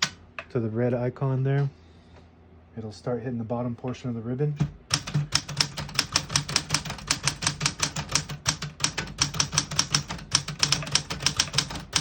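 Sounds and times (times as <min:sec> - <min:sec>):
manual typewriter typing: 0:04.6 - 0:12.0.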